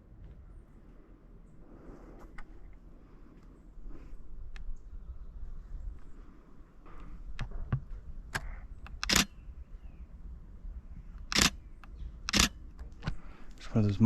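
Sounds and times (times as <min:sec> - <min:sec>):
camera shutter clicking: 0:08.9 - 0:09.3, 0:11.2 - 0:11.6, 0:12.3 - 0:12.6.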